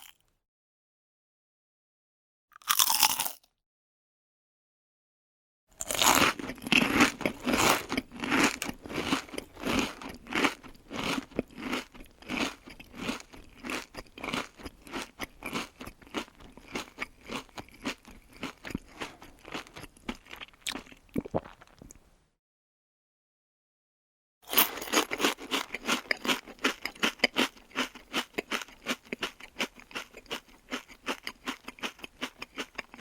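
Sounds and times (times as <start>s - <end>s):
crunchy chewing: 2.6s - 3.4s, 5.8s - 22.0s, 24.5s - 33.0s.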